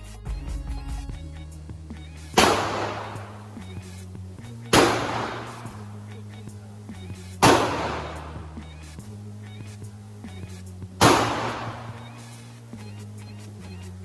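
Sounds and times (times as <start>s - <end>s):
background music: 0.0s - 14.0s
gunshots echoing: 2.4s - 3.7s, 4.8s - 6.1s, 7.4s - 8.8s, 11.0s - 12.5s.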